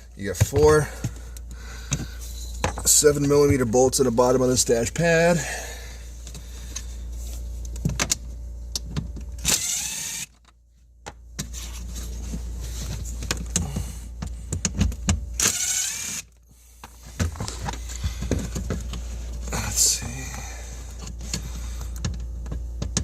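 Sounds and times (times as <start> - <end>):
power tool motor whine: 9.4 - 10.4, 15.4 - 16.4.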